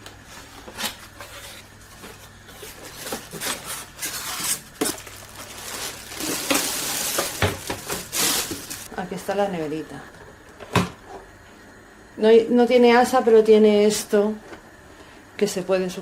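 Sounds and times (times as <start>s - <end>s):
low steady hum: 0.0s - 16.0s
plastic packaging rustling: 0.2s - 8.9s.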